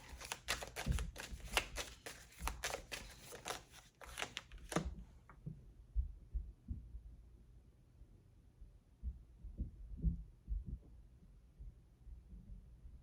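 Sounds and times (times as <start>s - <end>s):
cards being shuffled: 0.0s - 5.0s
soft low thumps: 9.0s - 11.0s.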